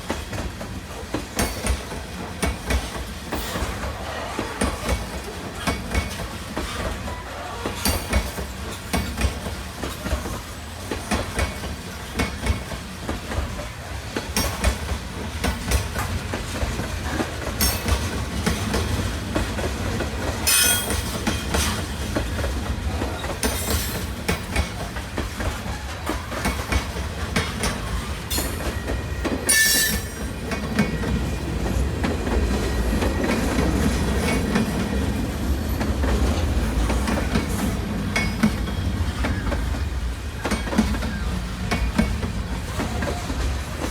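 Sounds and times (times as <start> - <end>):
train rumbling past: 0.0 - 43.9
wheels clacking over rail joints: 0.0 - 43.9
wheel squeals: 27.6 - 31.4.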